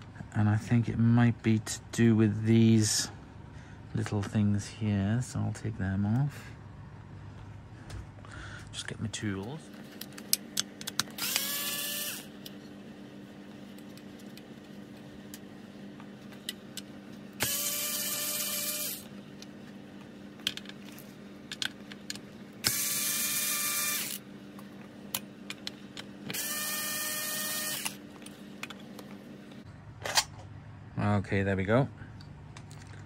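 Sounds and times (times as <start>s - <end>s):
electric screwdriver motor whine: 11.1s - 12.3s, 17.4s - 19.1s, 22.6s - 24.2s, 26.3s - 28.0s.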